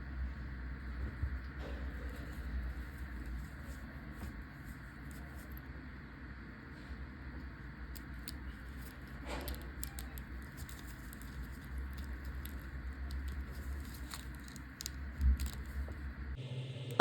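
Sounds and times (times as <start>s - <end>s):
steady low hum: 0.0s - 17.0s
small clicks of plug parts: 7.9s - 15.7s.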